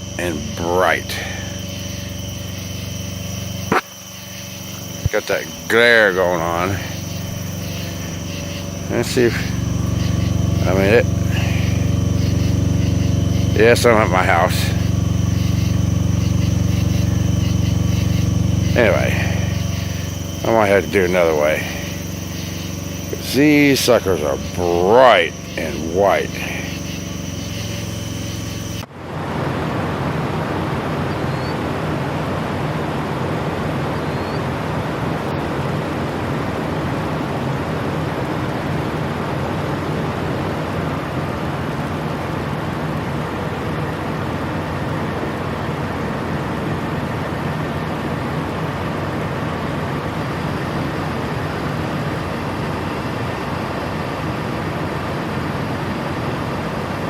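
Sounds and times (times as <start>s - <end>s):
diesel truck engine running: 0.0s - 28.8s.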